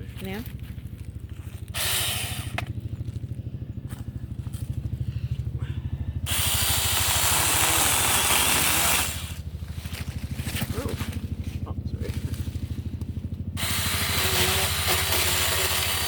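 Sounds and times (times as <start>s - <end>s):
low fast-pulsing hum: 0.0s - 16.0s
mini chainsaw cutting saplings: 1.6s - 3.2s, 6.2s - 11.2s, 12.1s - 16.0s.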